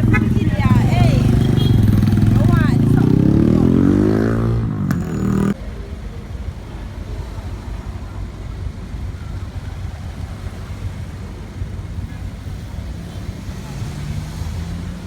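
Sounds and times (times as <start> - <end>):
engine revving: 0.0 - 5.6, 13.3 - 15.0
low traffic rumble: 0.0 - 15.0.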